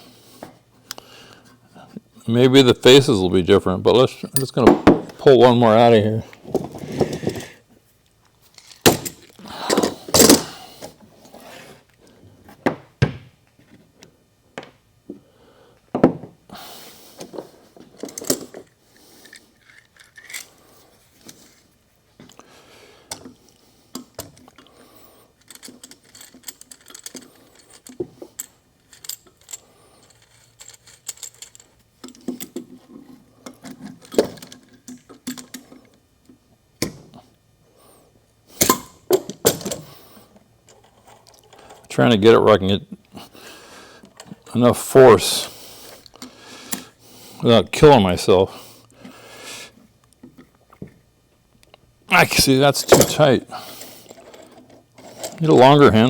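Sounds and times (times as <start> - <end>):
metal tools clinking and knocking: 25.4 - 32.6, 52.8 - 56.0.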